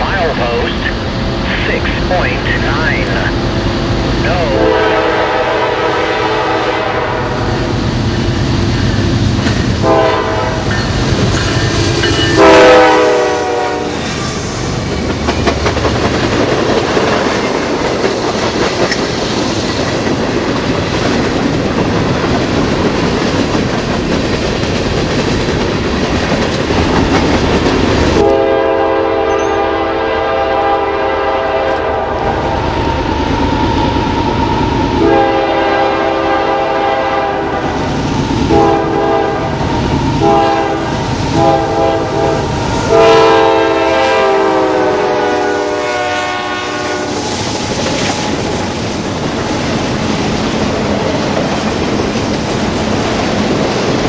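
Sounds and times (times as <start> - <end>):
train passing with wheel clatter: 0.0 - 54.0
locomotive air horn chord: 4.5 - 7.5, 9.8 - 10.7, 12.3 - 14.0, 28.2 - 32.4, 35.0 - 37.7, 38.5 - 39.6, 40.2 - 47.2.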